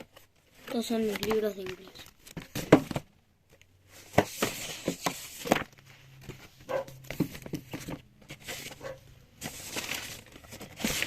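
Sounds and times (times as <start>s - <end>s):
paper rustling: 0.0s - 3.0s, 3.8s - 11.0s
books knocking: 2.4s - 3.1s.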